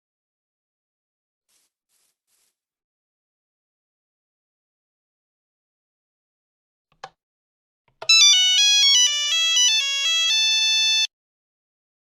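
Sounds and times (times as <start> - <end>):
phone ringtone melody: 8.0 - 11.1.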